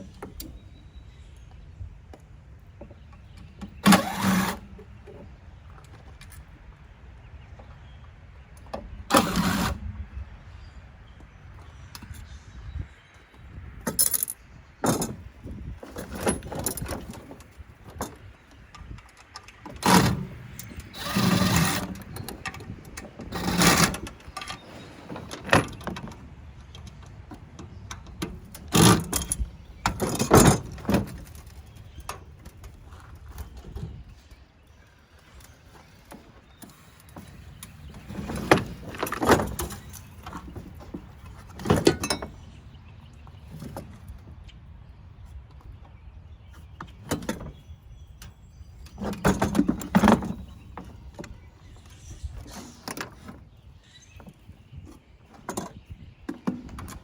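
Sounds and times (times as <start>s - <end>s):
rattling bursts: 19.6s - 26.2s.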